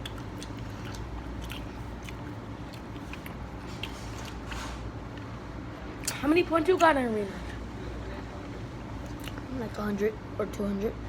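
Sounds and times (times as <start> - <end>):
person chewing food: 0.0 - 5.3, 9.0 - 9.5
low room hum: 0.0 - 11.0.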